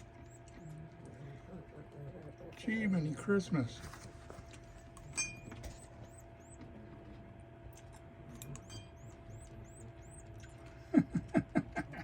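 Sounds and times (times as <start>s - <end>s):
canary chick begging chirps: 0.0s - 0.9s, 4.6s - 6.7s, 7.7s - 11.0s.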